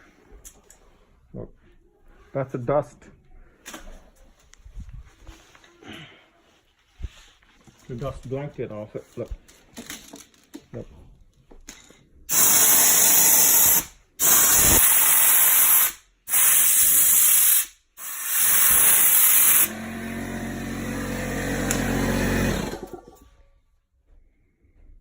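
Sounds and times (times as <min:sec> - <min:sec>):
hissing spray blasts: 0:12.3 - 0:19.7
motor humming: 0:19.4 - 0:23.2.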